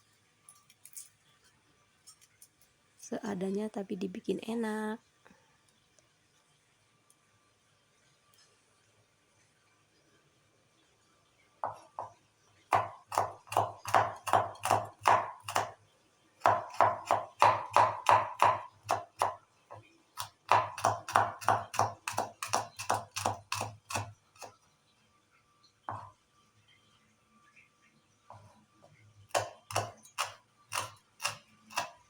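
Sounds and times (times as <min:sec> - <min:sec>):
knife chopping on cutting board: 0:12.7 - 0:15.7, 0:16.4 - 0:19.4, 0:20.2 - 0:24.1, 0:29.3 - 0:32.0.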